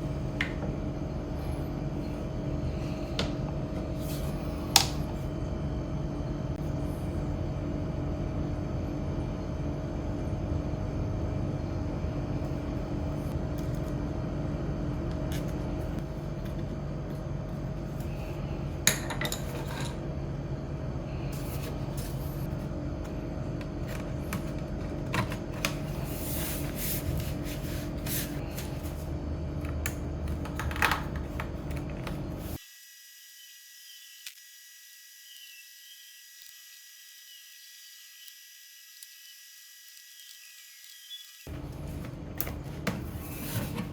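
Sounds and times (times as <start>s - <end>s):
steady background hum: 0.0s - 32.6s, 41.5s - 43.9s.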